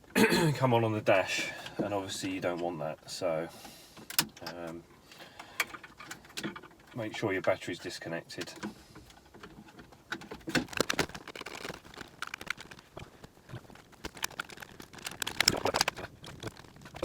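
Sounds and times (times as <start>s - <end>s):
plastic trim clicking and rattling: 9.3s - 12.9s, 13.8s - 17.0s.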